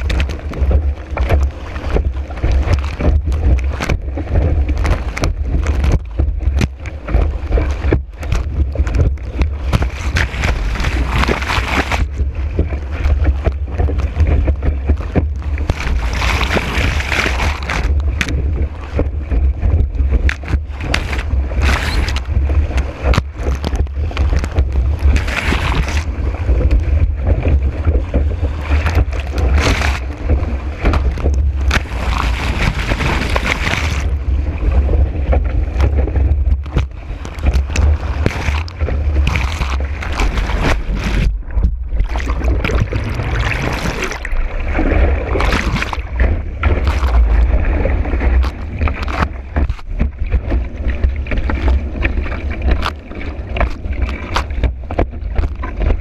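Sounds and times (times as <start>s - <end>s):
board slapping water: 0.0s - 56.0s.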